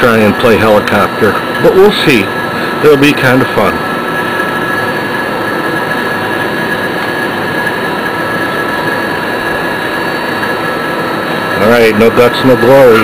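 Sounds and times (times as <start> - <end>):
phase converter humming: 0.0 - 13.0.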